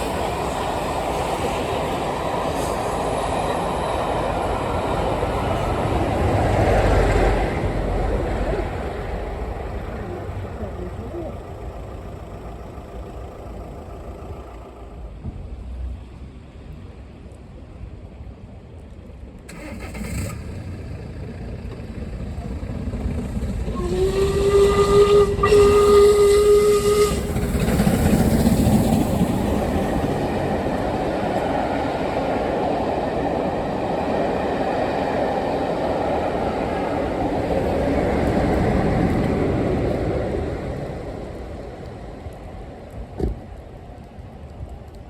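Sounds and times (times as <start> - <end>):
train passing: 0.0 - 45.0
locomotive horn: 23.7 - 27.4.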